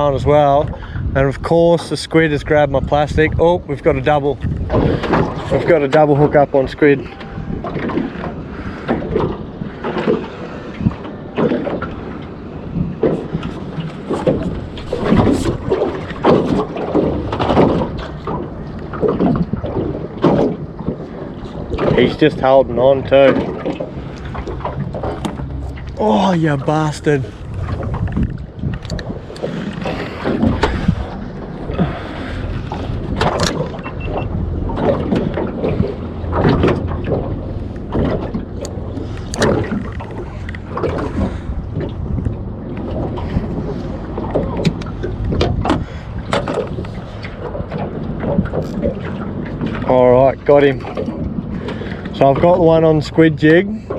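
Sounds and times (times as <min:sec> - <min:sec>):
water slapping against boat hull: 0:00.0 - 0:53.9
wind buffeting microphone: 0:00.0 - 0:53.9.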